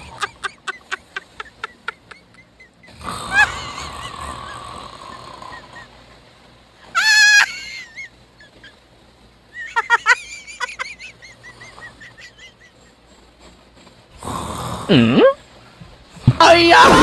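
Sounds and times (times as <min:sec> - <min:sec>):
person snoring with honks: 0:02.9 - 0:05.9, 0:14.2 - 0:15.4.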